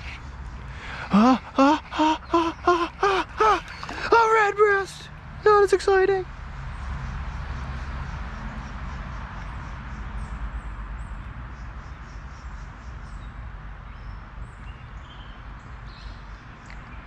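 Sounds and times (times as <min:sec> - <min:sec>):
creek water rushing: 0:00.0 - 0:06.1.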